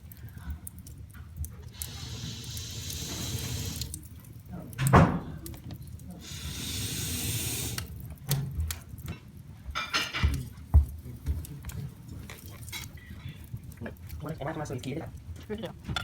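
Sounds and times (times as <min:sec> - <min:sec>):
wood fire crackling and popping: 0:00.0 - 0:16.0
tap water running: 0:01.5 - 0:08.7.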